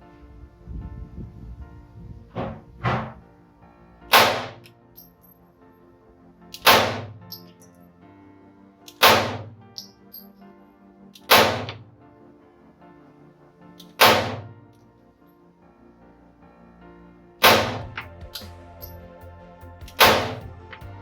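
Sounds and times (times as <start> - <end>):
faint background music: 0.0 - 21.0
pistol shots: 4.1 - 4.6, 6.6 - 7.1, 9.0 - 9.5, 11.3 - 11.8, 14.0 - 14.5, 17.4 - 17.9.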